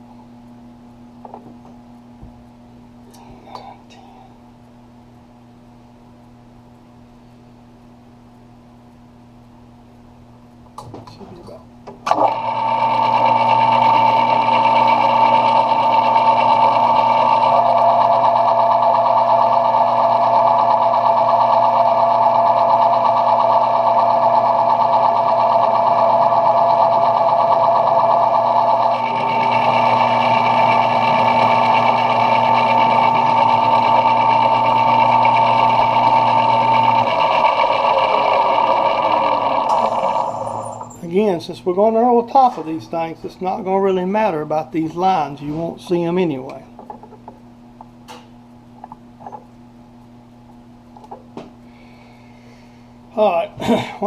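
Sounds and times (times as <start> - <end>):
low motor hum: 0.0 - 53.8
metal lathe running with whine: 12.1 - 42.3.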